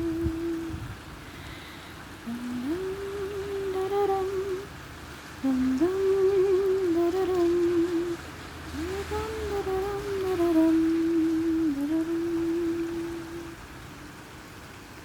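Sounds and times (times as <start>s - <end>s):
person humming a melody: 0.0s - 1.0s, 2.2s - 4.7s, 5.4s - 13.7s
person breathing: 1.2s - 2.1s.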